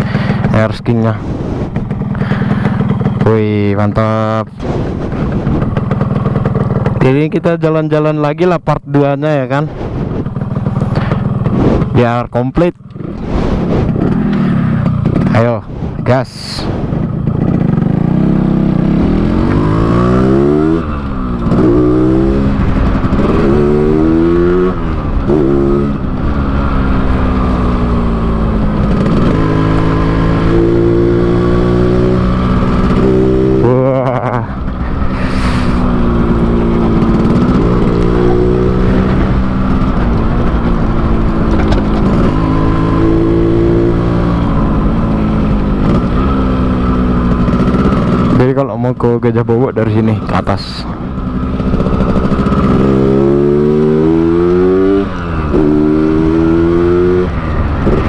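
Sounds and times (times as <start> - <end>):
motorcycle engine pulling away: 4.8 - 7.1, 16.9 - 48.5, 50.9 - 58.0.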